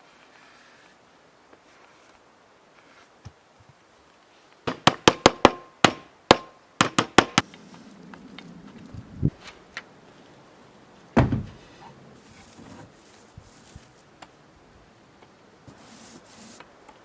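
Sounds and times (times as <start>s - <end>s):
hammer driving nails into wood: 4.7s - 7.4s
dull thump: 11.2s - 11.6s.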